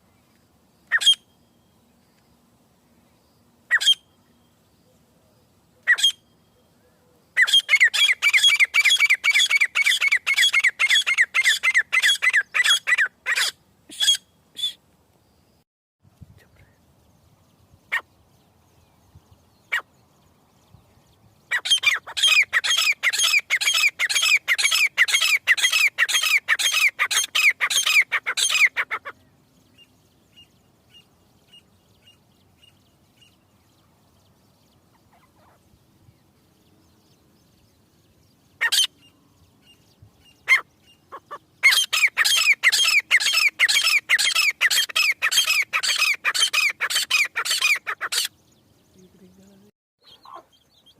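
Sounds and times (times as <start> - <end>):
francolin calling: 0.8 - 1.8, 3.7 - 14.8, 19.6 - 20.1, 21.4 - 33.6, 37.0 - 50.9.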